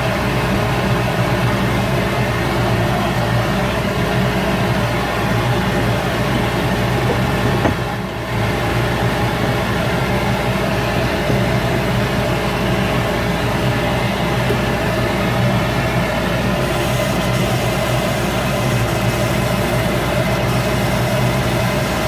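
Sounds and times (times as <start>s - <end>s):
wood lathe motor humming: 9.4s - 22.0s.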